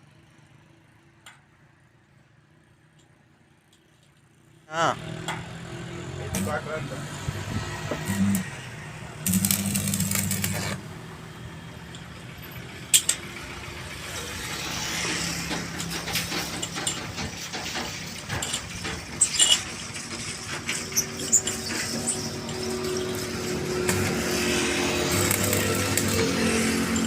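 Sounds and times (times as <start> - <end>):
metal tools clinking and rattling: 15.6 - 24.3, 25.0 - 27.0.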